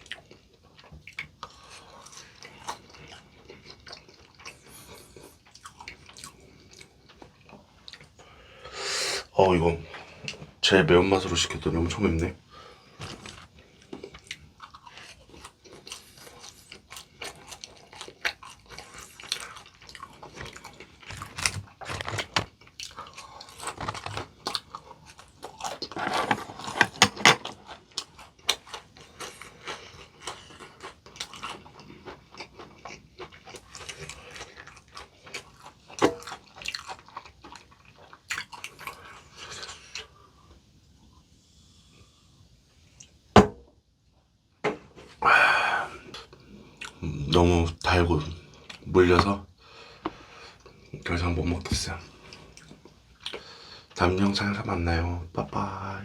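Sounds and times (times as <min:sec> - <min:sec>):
crunchy chewing of fried chicken: 0:00.0 - 0:08.8, 0:12.5 - 0:43.2, 0:51.8 - 0:54.0.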